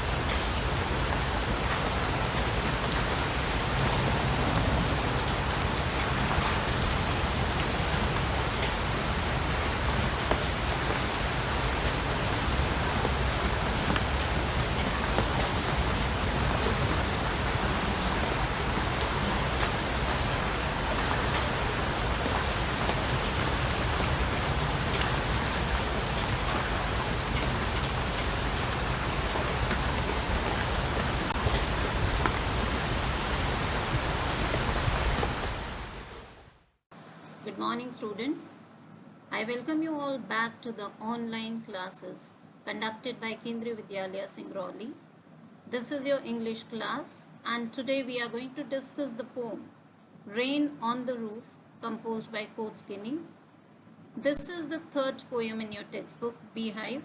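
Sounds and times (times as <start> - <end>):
raindrops ticking: 0.0 - 36.3
steady rain hiss: 0.0 - 57.0.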